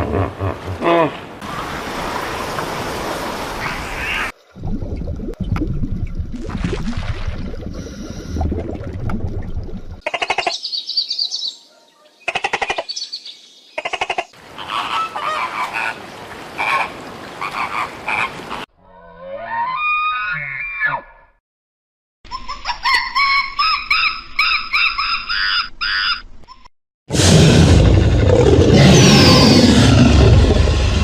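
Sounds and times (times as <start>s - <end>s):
low rumbling animal call: 27.2s - 31.0s.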